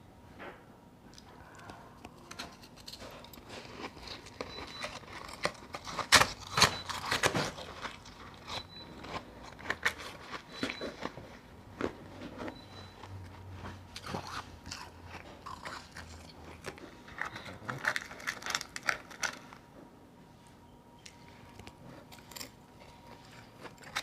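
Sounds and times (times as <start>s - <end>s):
ice crunching being chewed: 2.3s - 19.6s, 21.5s - 24.0s.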